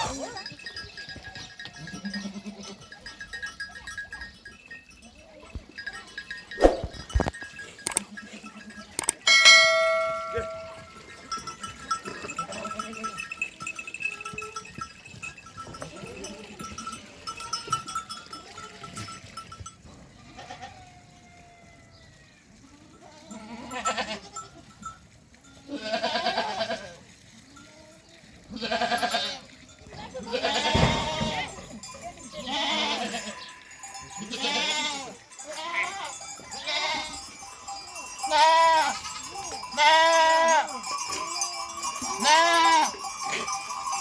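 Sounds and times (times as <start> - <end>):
livestock neck bells ringing: 0.0 - 20.7, 22.6 - 44.0
sheep bleating: 1.7 - 2.9, 20.2 - 20.9, 22.6 - 24.6, 25.7 - 27.0, 28.5 - 29.5, 30.2 - 31.7, 32.3 - 33.5, 34.2 - 37.3, 38.2 - 40.8, 41.4 - 43.4.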